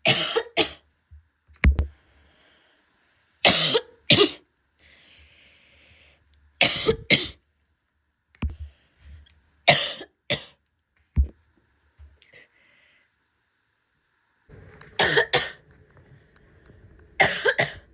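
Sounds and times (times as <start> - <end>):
woman coughing harshly: 0.0 - 0.8, 3.5 - 4.4, 6.6 - 7.4, 9.7 - 10.5, 15.0 - 15.6, 17.2 - 17.8.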